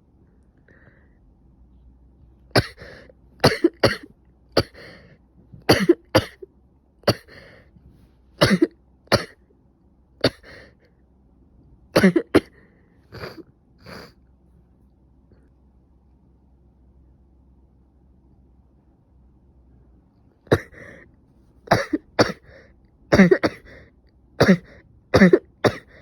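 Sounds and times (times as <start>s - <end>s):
person coughing: 2.5s - 5.0s, 5.6s - 6.4s, 7.0s - 7.6s, 8.4s - 9.4s, 10.2s - 10.7s, 12.0s - 14.1s, 20.5s - 21.0s, 21.7s - 26.0s.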